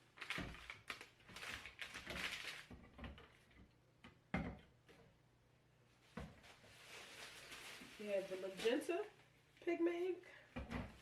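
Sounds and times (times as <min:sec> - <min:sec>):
plastic packaging rustling: 0:00.0 - 0:03.2, 0:06.4 - 0:09.2.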